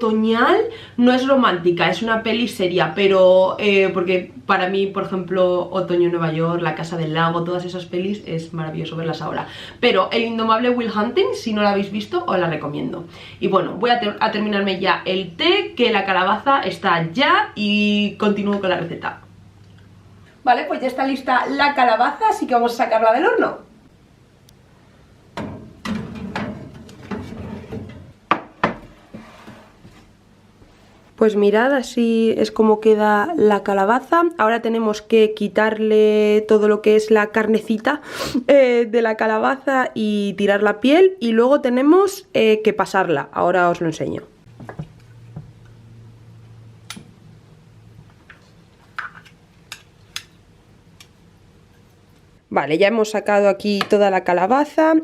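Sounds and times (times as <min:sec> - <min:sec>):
oven door opening: 0:25.4 - 0:28.1
baking tray clattering: 0:25.4 - 0:29.9.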